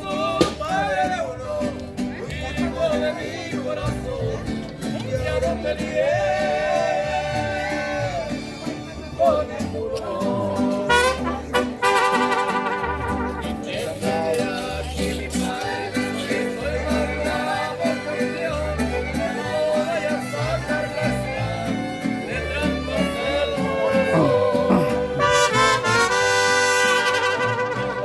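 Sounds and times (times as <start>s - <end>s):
band playing instrumental music: 10.8s - 14.6s, 20.0s - 28.0s
sustained lead melody: 24.1s - 26.5s.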